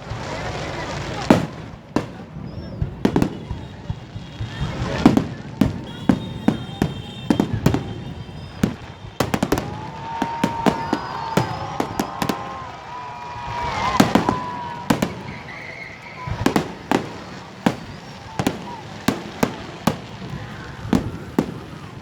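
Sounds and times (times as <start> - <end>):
firework bangs: 0.0 - 22.0
firework crackling: 0.0 - 22.0
firework whistling: 0.0 - 22.0.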